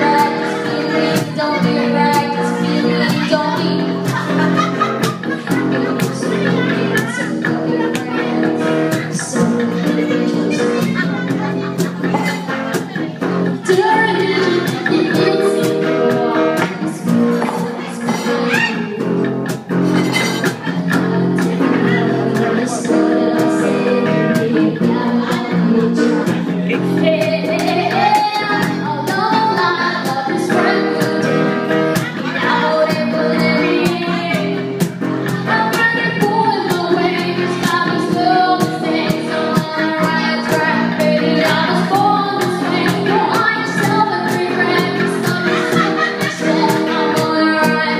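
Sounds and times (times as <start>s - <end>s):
live band playing: 0.0s - 47.9s
lead vocal singing: 21.4s - 47.9s.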